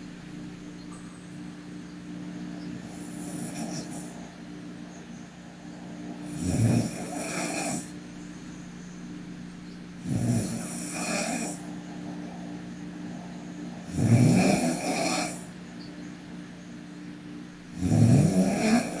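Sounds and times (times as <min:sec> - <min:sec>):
woman snoring: 0:02.8 - 0:04.3, 0:06.2 - 0:08.0, 0:10.0 - 0:11.7, 0:13.8 - 0:15.5, 0:17.7 - 0:19.0.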